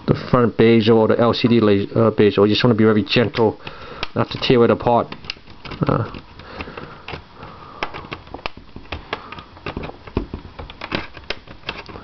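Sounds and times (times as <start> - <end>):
screwdriver prying plastic clicks: 5.1 - 7.2.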